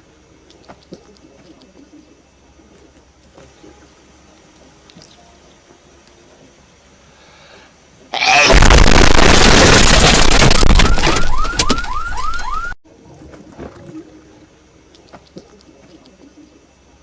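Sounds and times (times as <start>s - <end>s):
loud distorted sneeze blast: 8.2s - 9.6s.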